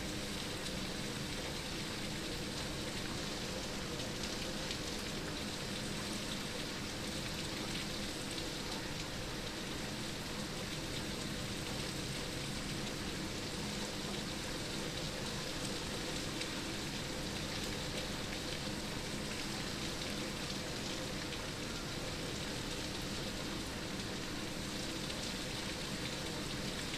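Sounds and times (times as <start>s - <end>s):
rain pattering outside: 0.0s - 26.9s.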